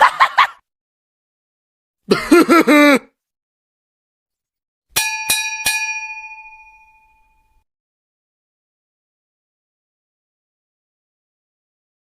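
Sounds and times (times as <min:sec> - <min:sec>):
bell ringing: 0:05.0 - 0:07.6.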